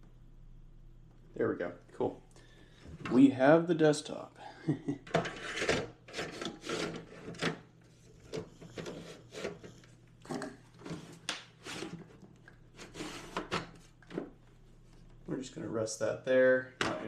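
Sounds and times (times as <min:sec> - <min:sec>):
plastic parts scraping and knocking: 0:05.1 - 0:14.3.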